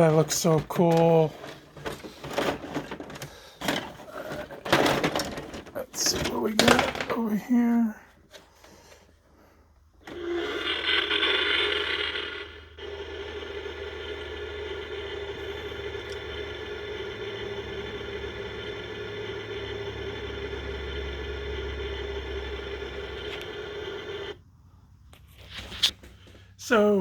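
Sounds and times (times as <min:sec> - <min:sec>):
toy electronic engine hum: 0:10.0 - 0:24.4.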